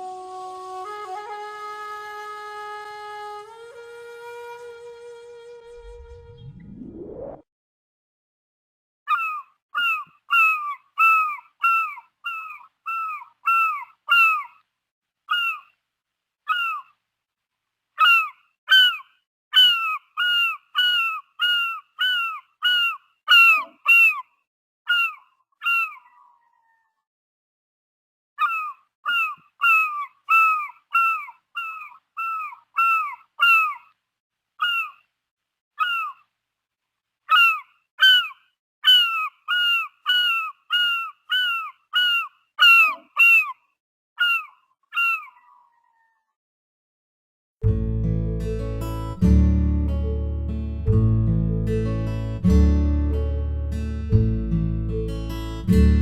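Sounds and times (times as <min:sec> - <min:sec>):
seagull calling: 0:09.1 - 0:14.5, 0:15.3 - 0:15.7, 0:16.5 - 0:16.9, 0:18.0 - 0:24.2, 0:24.9 - 0:26.8, 0:28.4 - 0:33.9, 0:34.6 - 0:35.0, 0:35.8 - 0:36.2, 0:37.3 - 0:43.6, 0:44.2 - 0:46.2.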